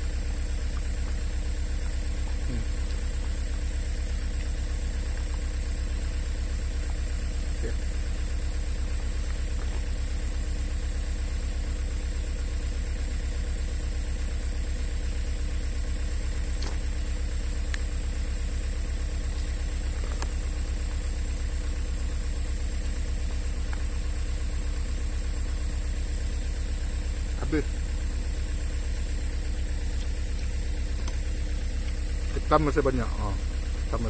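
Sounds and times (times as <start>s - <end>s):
engine idling: 0.0s - 34.0s
faint ticks: 0.4s - 7.1s, 17.6s - 18.0s, 19.1s - 20.8s, 23.6s - 24.1s, 29.3s - 32.2s.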